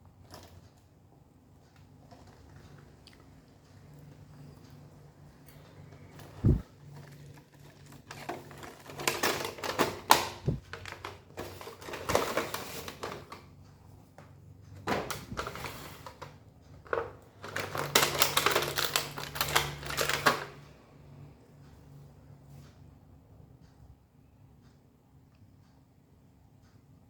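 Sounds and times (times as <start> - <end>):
packaging rustling: 6.2 - 13.4, 16.9 - 20.5.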